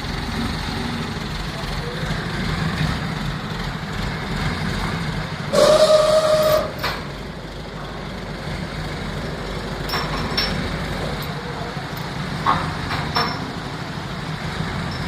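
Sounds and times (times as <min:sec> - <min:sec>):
low mechanical rumble: 0:00.0 - 0:15.0
hissing whistle-like tone: 0:05.5 - 0:06.8.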